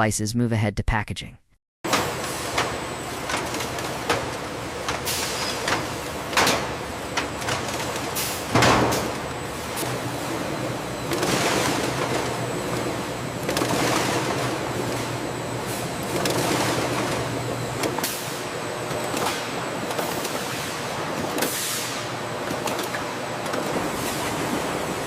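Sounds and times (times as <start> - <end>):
food processing machinery running: 1.9 - 25.0
machinery clicks and clanks: 1.9 - 25.0.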